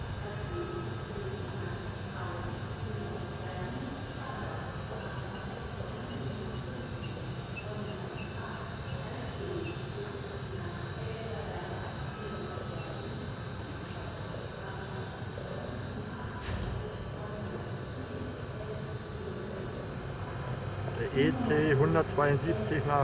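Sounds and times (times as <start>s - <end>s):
high squeal of train wheels: 0.0s - 16.0s
train rumble: 19.0s - 23.0s.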